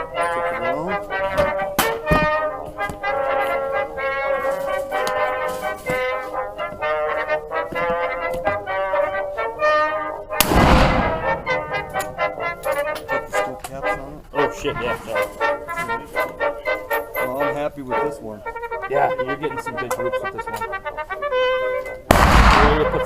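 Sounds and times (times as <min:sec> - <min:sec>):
brass band music: 0:00.0 - 0:23.0
rifle shot: 0:10.4 - 0:12.0, 0:22.1 - 0:23.0.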